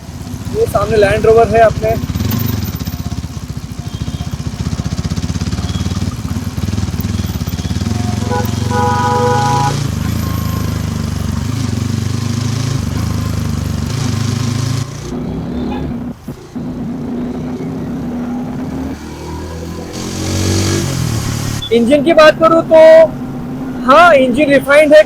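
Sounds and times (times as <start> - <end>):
motorcycle engine running: 0.0 - 23.8
vehicle horn: 3.8 - 10.9.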